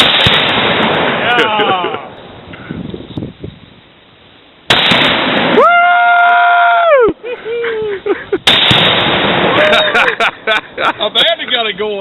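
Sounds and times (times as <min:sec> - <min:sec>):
loud explosion blast: 0:00.0 - 0:01.6, 0:04.7 - 0:05.7, 0:08.4 - 0:09.9
person whooping: 0:05.6 - 0:08.2.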